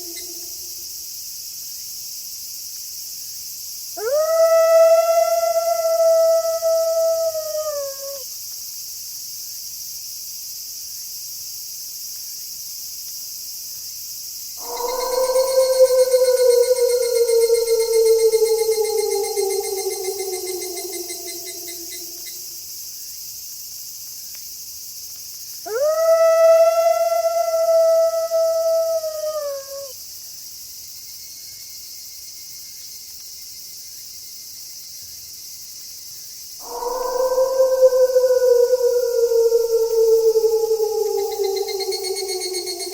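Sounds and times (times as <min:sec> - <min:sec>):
wolf howling: 0:00.0 - 0:00.8, 0:04.0 - 0:08.2, 0:14.6 - 0:22.5, 0:25.7 - 0:29.9, 0:36.6 - 0:42.9
crickets chirping: 0:00.0 - 0:12.7, 0:13.3 - 0:23.8, 0:24.6 - 0:42.9.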